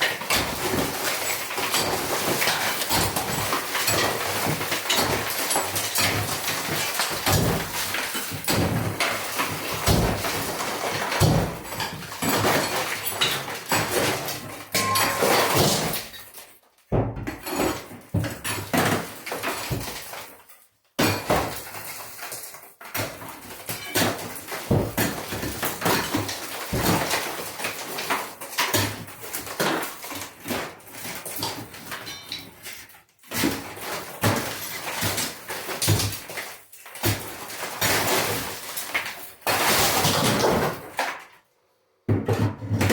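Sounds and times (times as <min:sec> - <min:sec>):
pickaxe striking concrete: 0:00.0 - 0:16.2, 0:23.8 - 0:27.2
broken pieces clattering: 0:00.0 - 0:41.4.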